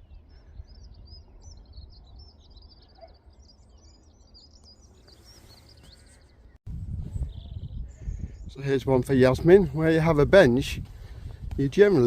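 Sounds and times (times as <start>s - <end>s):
songbird twittering: 0.0s - 8.6s.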